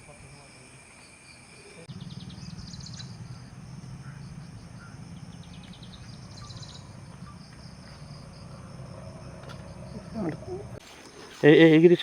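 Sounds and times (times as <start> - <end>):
insects chirping: 0.0 - 12.0
steady low hum: 1.9 - 10.8.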